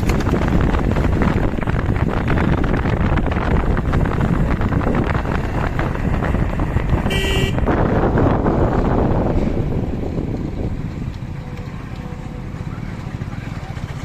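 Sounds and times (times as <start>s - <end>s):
heavy diesel machinery running: 0.0s - 14.0s
short horn toot: 7.1s - 7.7s.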